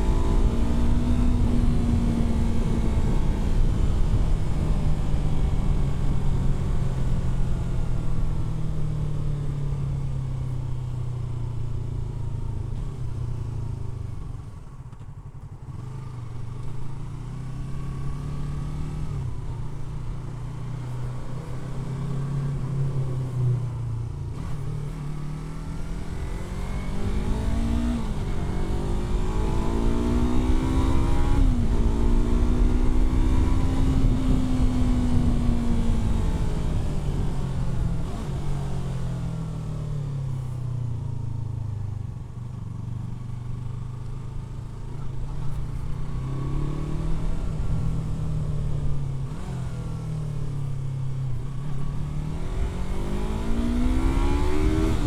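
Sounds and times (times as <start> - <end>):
motorcycle engine shifting gears: 21.0 - 55.0.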